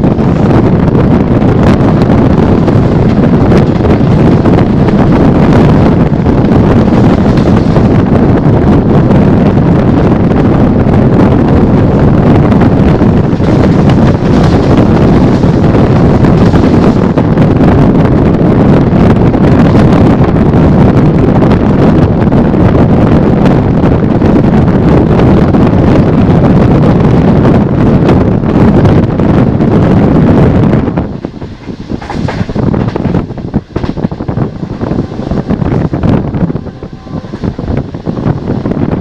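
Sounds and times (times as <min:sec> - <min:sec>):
wind buffeting microphone: 0:00.0 - 0:39.0
train rushing past: 0:31.1 - 0:39.0.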